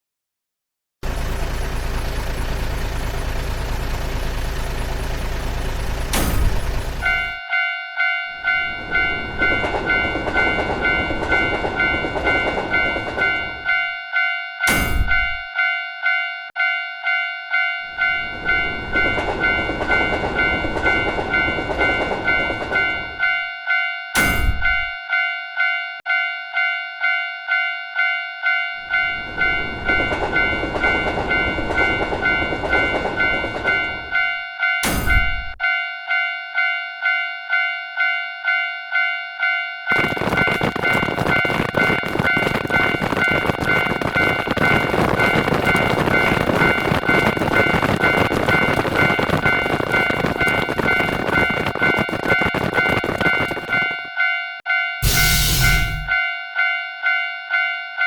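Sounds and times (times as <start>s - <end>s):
train passing with rushing rumble: 1.0s - 7.4s, 8.3s - 13.9s, 17.8s - 23.5s, 28.8s - 35.6s, 39.9s - 54.1s, 55.0s - 56.2s
level-crossing warning bell: 1.0s - 58.0s
train rumbling past: 8.4s - 13.9s, 17.9s - 23.4s, 28.8s - 34.4s, 55.0s - 56.2s.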